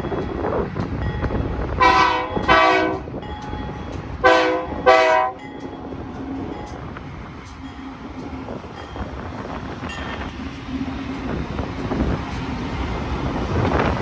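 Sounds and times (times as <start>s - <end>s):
freight train rumbling past: 0.0s - 14.0s
locomotive horn blasts: 1.8s - 3.1s, 4.2s - 5.5s.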